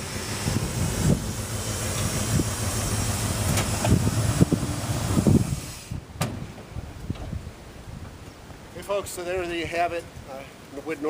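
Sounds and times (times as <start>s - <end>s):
truck engine accelerating: 0.0s - 6.1s.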